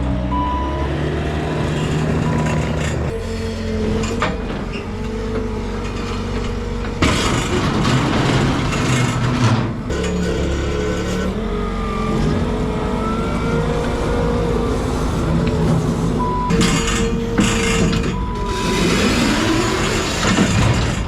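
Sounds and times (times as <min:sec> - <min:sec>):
engine revving under load: 0:00.0 - 0:21.0
reversing alarm beeps: 0:00.3 - 0:00.9, 0:02.2 - 0:03.0, 0:16.2 - 0:19.4.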